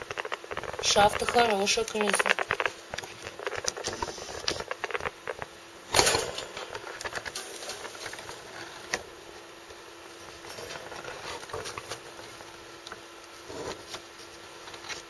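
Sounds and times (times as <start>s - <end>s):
rat clicking and crackling: 0.0s - 5.5s.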